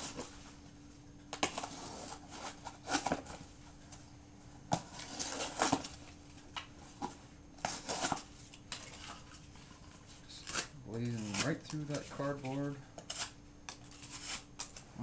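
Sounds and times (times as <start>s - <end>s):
faint steady hum: 0.0s - 15.0s
knife cutting cardboard: 1.4s - 3.4s, 4.7s - 6.0s, 10.4s - 14.8s.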